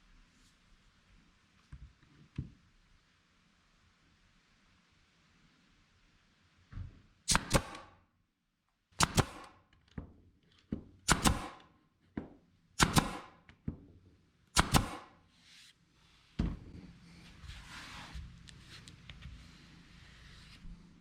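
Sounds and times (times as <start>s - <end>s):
nail gun firing into wood: 7.3s - 8.0s, 9.0s - 9.7s, 11.0s - 11.7s, 12.8s - 13.5s, 14.5s - 15.2s.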